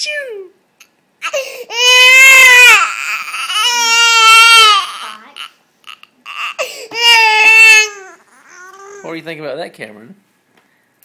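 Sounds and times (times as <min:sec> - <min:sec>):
baby crying: 0:00.8 - 0:09.2.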